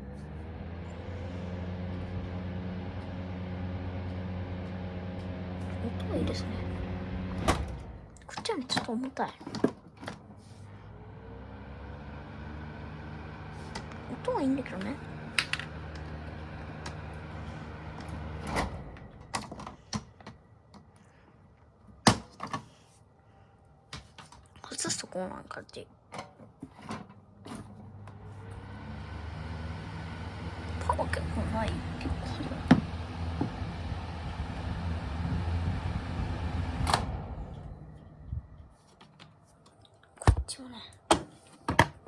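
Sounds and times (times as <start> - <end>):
ventilation fan humming: 0.0 - 9.7, 10.6 - 20.1, 26.9 - 38.6.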